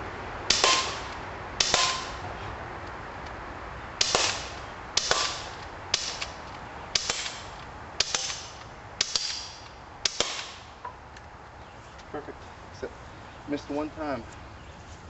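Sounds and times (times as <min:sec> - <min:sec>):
air pistol shots: 0:00.5 - 0:02.2, 0:04.0 - 0:10.7.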